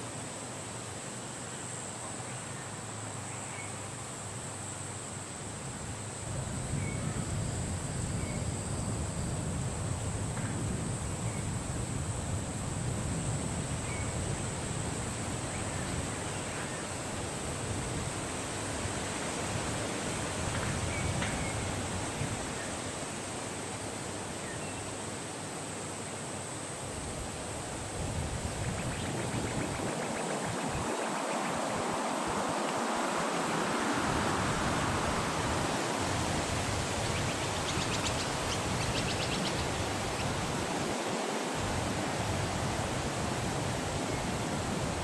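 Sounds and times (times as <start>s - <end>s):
steady high hiss: 0.0s - 45.0s
wind blowing: 26.8s - 45.0s
faint bird chirps: 37.0s - 40.3s.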